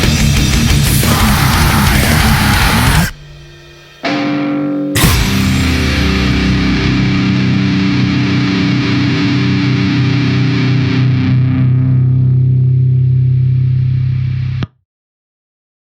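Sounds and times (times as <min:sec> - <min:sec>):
distorted electric guitar chord ringing: 0:00.0 - 0:14.6.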